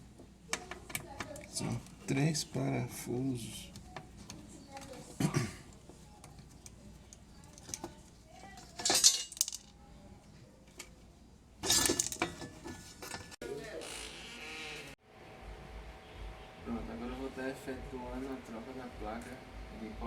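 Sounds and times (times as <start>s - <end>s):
parts rattling: 5.7s - 9.8s, 11.6s - 13.8s
small screws and parts clinking: 5.7s - 9.8s.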